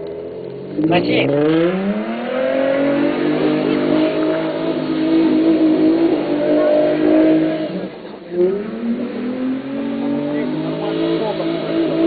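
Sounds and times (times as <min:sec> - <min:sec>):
car engine droning at high revs: 0:00.0 - 0:12.0.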